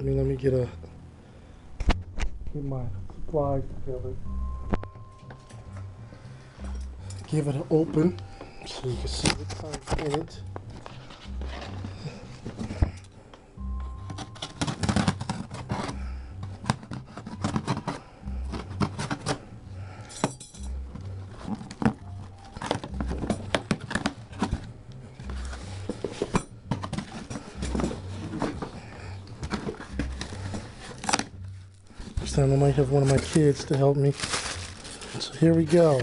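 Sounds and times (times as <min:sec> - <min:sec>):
packaging being opened by hand: 0:08.8 - 0:12.7, 0:14.0 - 0:19.4, 0:21.3 - 0:24.7, 0:29.4 - 0:36.0.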